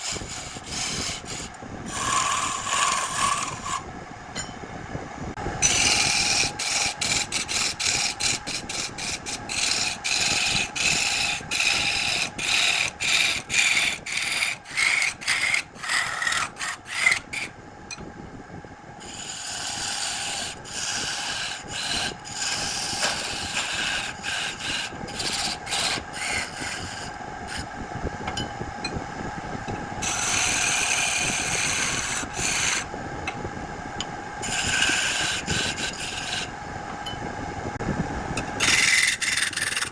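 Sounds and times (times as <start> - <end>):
tool scraping wood: 0.0 - 3.8, 5.6 - 17.5, 19.1 - 27.7, 30.0 - 32.9, 34.4 - 36.5, 38.6 - 39.9
wood lathe humming: 0.0 - 3.8, 5.6 - 17.5, 19.1 - 27.7, 30.0 - 32.9, 34.4 - 36.5, 38.6 - 39.9.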